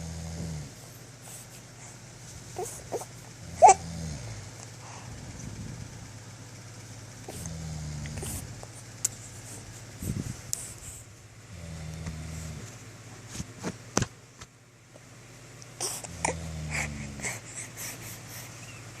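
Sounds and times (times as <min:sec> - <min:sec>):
man snoring: 0:00.0 - 0:00.8, 0:03.4 - 0:04.5, 0:07.3 - 0:08.5, 0:11.5 - 0:12.6, 0:16.0 - 0:17.4.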